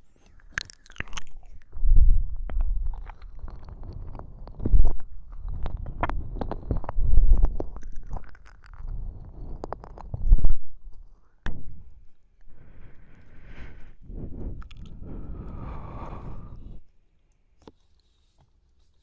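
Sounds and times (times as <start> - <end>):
wet mouth clicks and smacks: 0.2 - 10.6, 14.5 - 16.5
low rumbling swells: 11.5 - 16.9.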